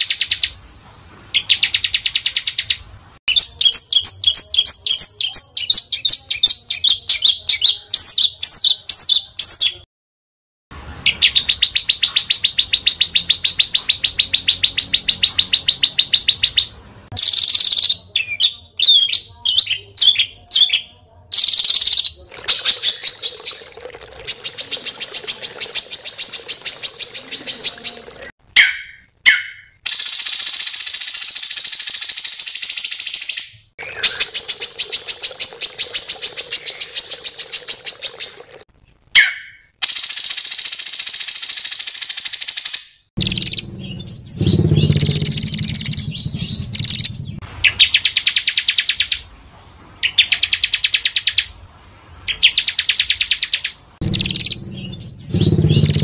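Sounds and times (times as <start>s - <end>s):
bird chirps: 1.3s - 9.9s, 11.0s - 38.6s, 39.2s - 49.3s, 52.3s - 56.0s
songbirds singing harsh trills: 11.0s - 38.6s, 39.2s - 49.2s, 52.3s - 56.0s.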